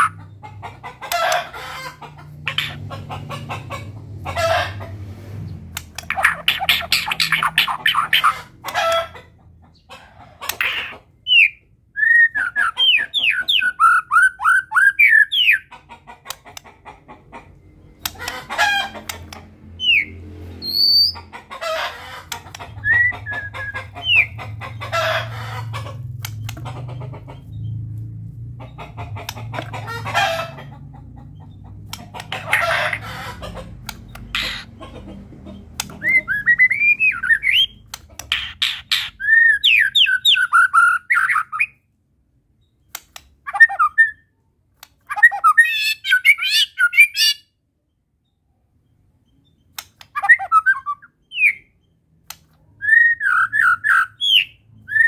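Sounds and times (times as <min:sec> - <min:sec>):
harsh bird calls: 0:00.0 - 0:04.9, 0:05.5 - 0:27.9, 0:28.6 - 0:41.8, 0:45.0 - 0:47.6, 0:49.3 - 0:55.0
bird whistled song: 0:11.2 - 0:15.7, 0:19.8 - 0:21.2, 0:22.8 - 0:24.4, 0:36.0 - 0:37.8, 0:38.9 - 0:41.8, 0:50.2 - 0:51.8, 0:52.8 - 0:55.0.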